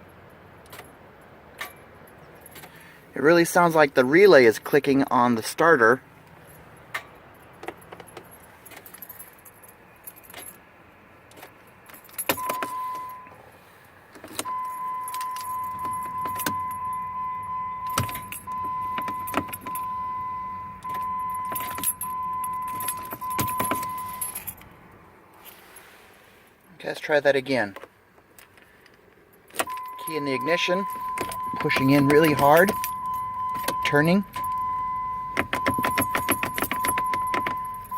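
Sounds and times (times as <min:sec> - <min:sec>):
keys jangling: 0:06.4 - 0:10.6, 0:11.3 - 0:13.1, 0:14.2 - 0:20.0, 0:20.8 - 0:24.7, 0:29.3 - 0:37.9.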